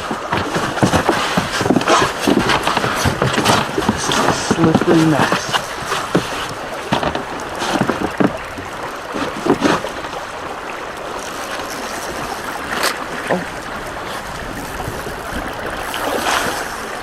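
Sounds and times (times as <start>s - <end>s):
thumps against boat hull: 0.0s - 10.2s
river water running: 0.0s - 17.0s.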